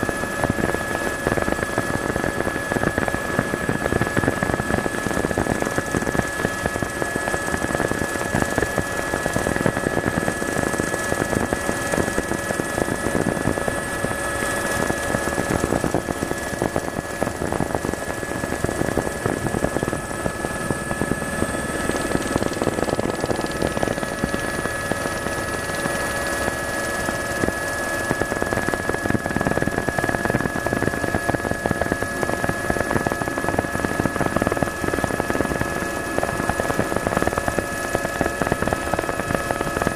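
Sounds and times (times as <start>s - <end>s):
helicopter engine and rotor drone: 0.0s - 39.9s.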